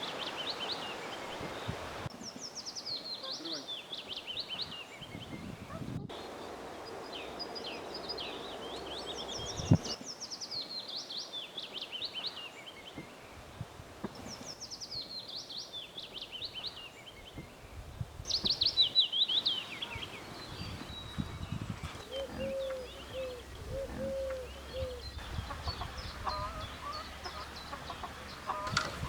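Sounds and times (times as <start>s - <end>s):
songbird singing: 0.0s - 29.0s
low rustling: 17.2s - 29.0s.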